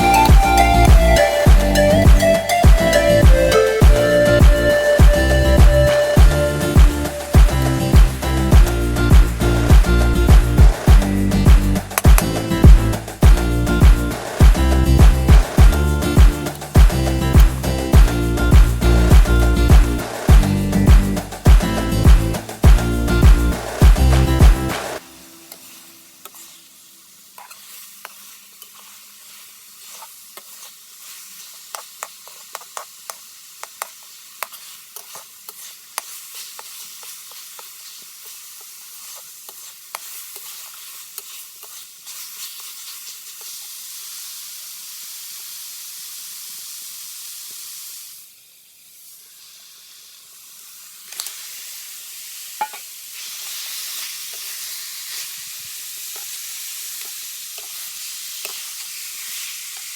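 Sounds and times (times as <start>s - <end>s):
food sizzling in a pan: 0.0s - 59.9s
spoon scraping a pan: 26.2s - 26.6s, 27.3s - 43.7s, 52.6s - 55.2s, 57.0s - 59.9s.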